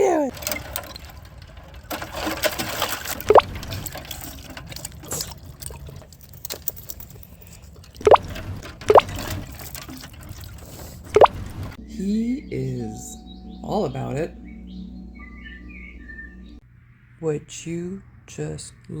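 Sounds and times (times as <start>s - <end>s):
liquid splashing and dripping: 3.2s - 6.0s, 8.0s - 11.8s.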